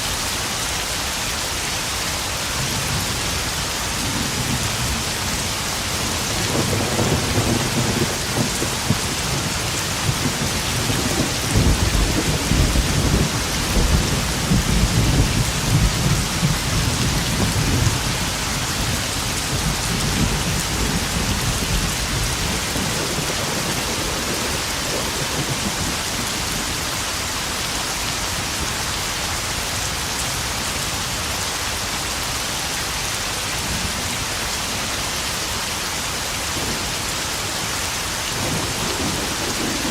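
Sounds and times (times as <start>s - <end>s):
heavy rain pattering on puddles: 0.0s - 39.9s
rolling thunder rumble: 4.0s - 26.8s, 38.3s - 39.9s.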